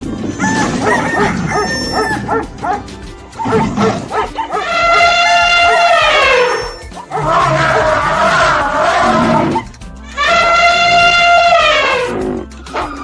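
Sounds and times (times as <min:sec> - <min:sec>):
dog yelping barks: 0:00.4 - 0:13.0
long falling howl: 0:04.5 - 0:09.6, 0:10.2 - 0:12.4.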